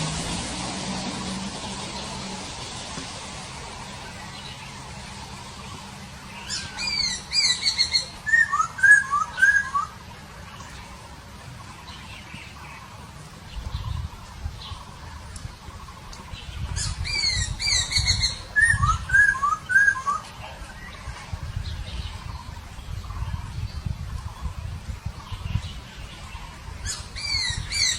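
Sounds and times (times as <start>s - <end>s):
bird whistled calls: 6.4s - 10.0s, 16.8s - 20.3s, 26.8s - 27.9s.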